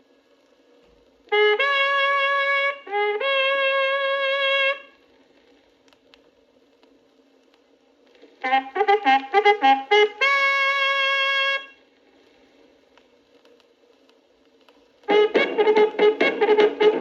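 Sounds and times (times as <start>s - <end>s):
record hiss: 0.0s - 17.0s
bugle call: 15.1s - 17.0s.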